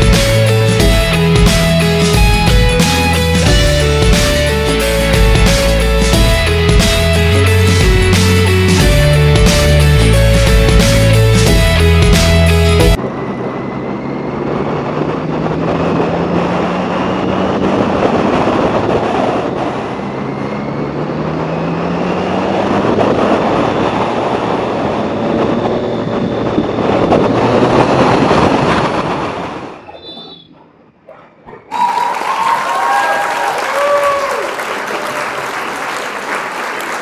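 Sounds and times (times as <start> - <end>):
music track: 0.0 - 13.0
motorcycle engine running: 0.0 - 20.1
heavy wind noise: 0.0 - 30.9.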